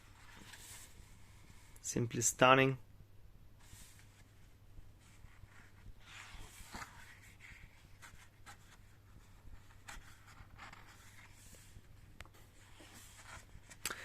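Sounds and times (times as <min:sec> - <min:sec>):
pages turning: 0:05.0 - 0:14.0.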